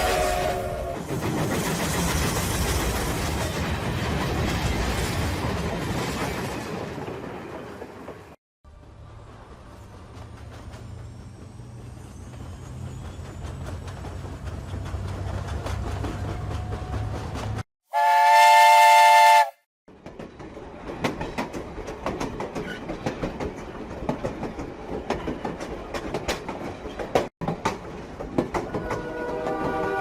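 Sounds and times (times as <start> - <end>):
train horn blast: 0.0 - 1.0, 17.9 - 19.6, 28.7 - 30.0
rail cars clicking and rattling: 0.0 - 17.7, 19.9 - 30.0
train rumbling: 0.0 - 30.0.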